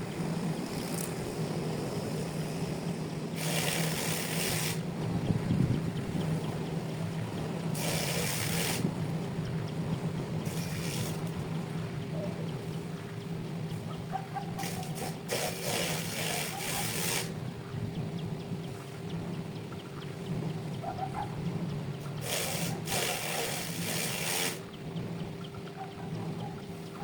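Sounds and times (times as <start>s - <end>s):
rushing hissing noise: 0.0s - 4.9s, 7.7s - 8.9s, 10.4s - 11.4s, 14.6s - 17.3s, 22.1s - 24.7s
motor humming: 0.0s - 20.8s, 21.4s - 26.8s.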